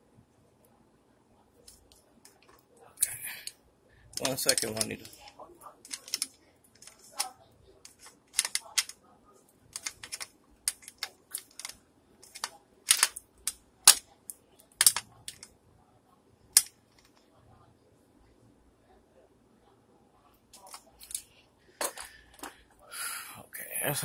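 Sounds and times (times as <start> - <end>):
plumbing parts clicking: 4.1 - 9.0, 9.7 - 14.0, 14.7 - 15.5.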